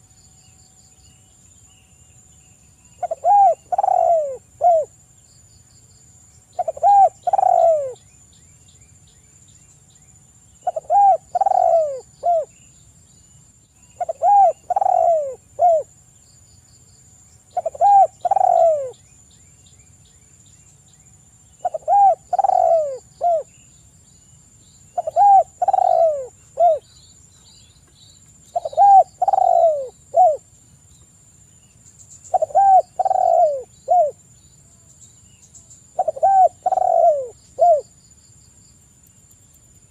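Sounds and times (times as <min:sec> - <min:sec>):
dove cooing: 0:03.0 - 0:04.9, 0:06.6 - 0:08.0, 0:10.6 - 0:12.5, 0:14.0 - 0:15.9, 0:17.6 - 0:19.0, 0:21.6 - 0:23.5, 0:25.0 - 0:26.8, 0:28.5 - 0:30.4, 0:32.3 - 0:34.2, 0:36.0 - 0:37.9.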